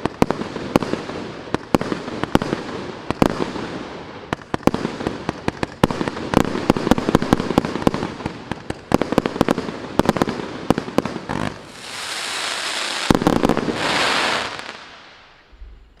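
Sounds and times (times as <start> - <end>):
firework bangs: 0.0 - 16.0
firework hissing: 11.1 - 15.4.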